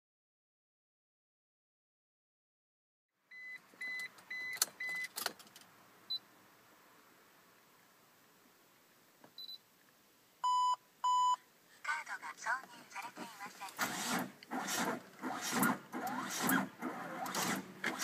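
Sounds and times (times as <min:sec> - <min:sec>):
louder lower beeps: 0:10.4 - 0:11.4.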